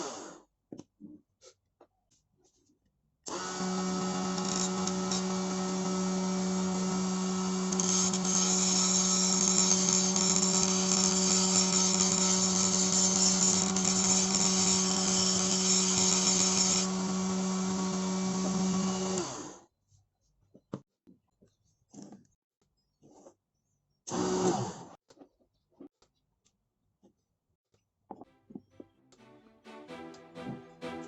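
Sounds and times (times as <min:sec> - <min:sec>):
rotary grinder motor humming: 0:03.3 - 0:19.4.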